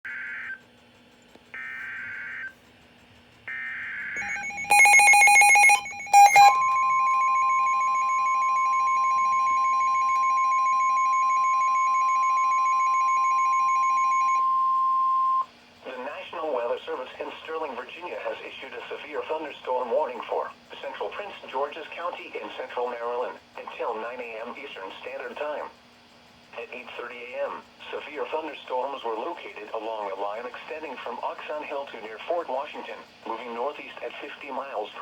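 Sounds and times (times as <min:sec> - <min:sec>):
steady warning alarm tone: 0:01.6 - 0:02.6, 0:03.4 - 0:15.5
loud rapid beeping: 0:03.5 - 0:15.4
screeching data tones: 0:03.5 - 0:15.5.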